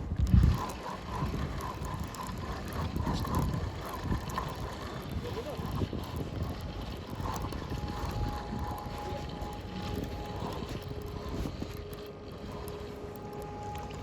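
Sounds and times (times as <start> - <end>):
wind noise on microphone: 0.0 - 14.0
faint steady tone: 6.9 - 14.0.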